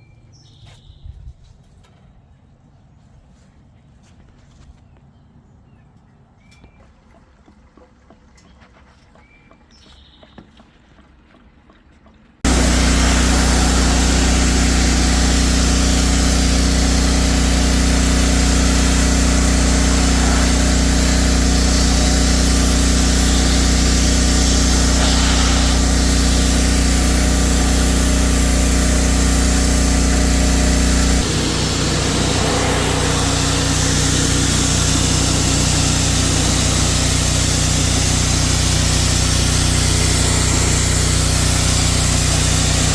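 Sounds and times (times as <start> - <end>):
power tool running with hum: 12.4 - 42.9.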